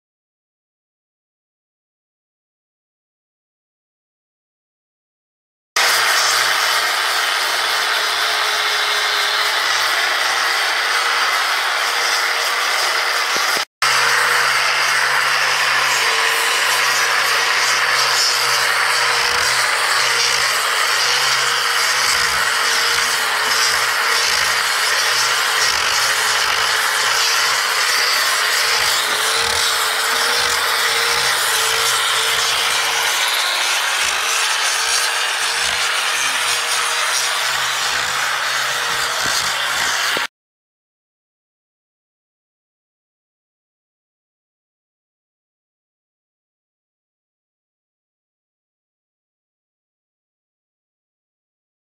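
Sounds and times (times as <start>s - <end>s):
angle grinder sanding wood: 5.8s - 40.3s.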